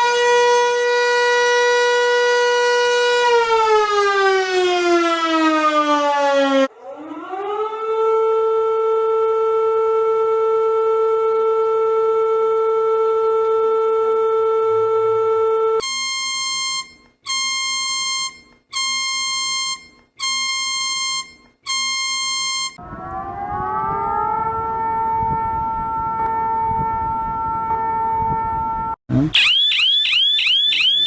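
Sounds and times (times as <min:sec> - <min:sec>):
siren-like tone: 0:00.0 - 0:31.0
whooping alarm: 0:15.8 - 0:31.0.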